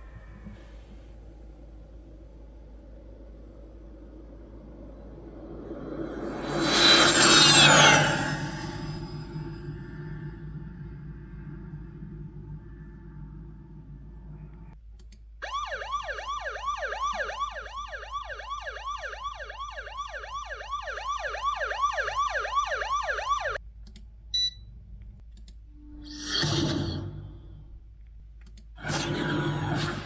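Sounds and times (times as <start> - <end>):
siren-like alarm wailing: 0.0 - 14.8, 15.4 - 23.6
brief whoosh: 0.1 - 14.8.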